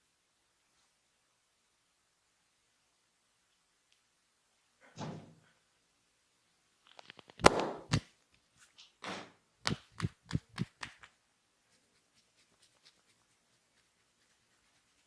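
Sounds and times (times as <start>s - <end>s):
hand slaps on body: 7.4s - 8.1s, 9.0s - 11.1s
rubbing swish: 9.7s - 11.0s.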